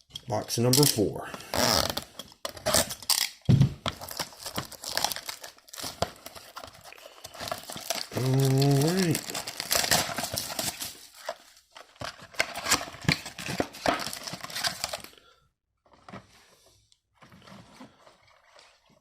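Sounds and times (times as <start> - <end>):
rustling of wrapper and cards: 0.7 - 15.2
foil wrapper crinkling and tearing: 3.9 - 15.2.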